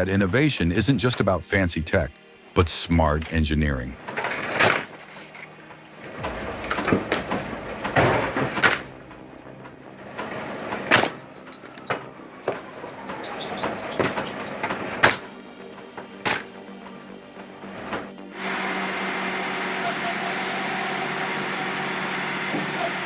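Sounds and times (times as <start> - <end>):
log splitter mechanical clatter: 3.0 - 23.0
logs knocking and cracking: 4.0 - 18.3.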